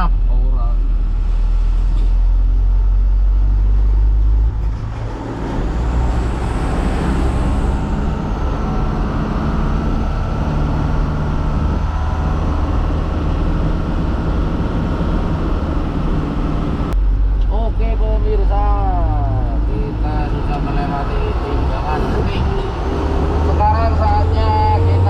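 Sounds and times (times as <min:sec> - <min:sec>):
road noise: 0:00.0 - 0:25.0
truck engine running: 0:00.0 - 0:25.0.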